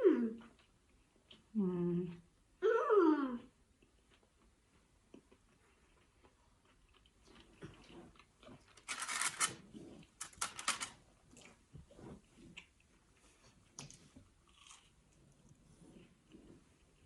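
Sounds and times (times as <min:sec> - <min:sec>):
chewing and mouth sounds: 0:03.4 - 0:08.8.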